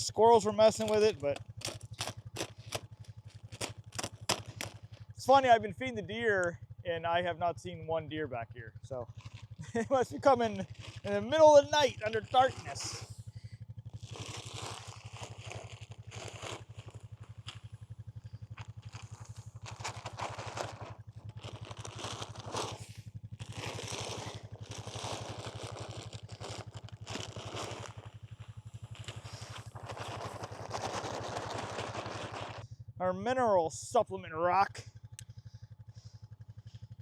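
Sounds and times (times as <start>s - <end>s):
small engine idling: 0.0s - 37.0s
rustling and scraping: 0.8s - 5.0s, 18.5s - 32.6s.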